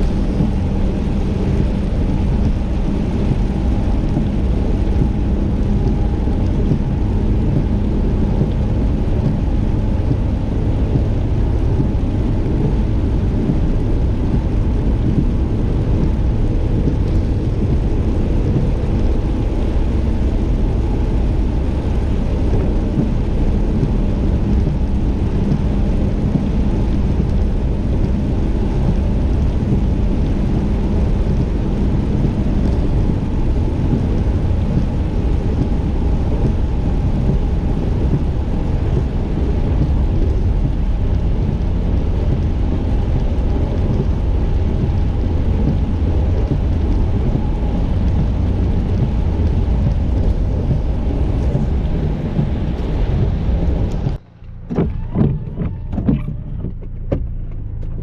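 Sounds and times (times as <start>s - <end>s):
rain falling: 0.0s - 58.0s
knocks: 54.7s - 57.4s.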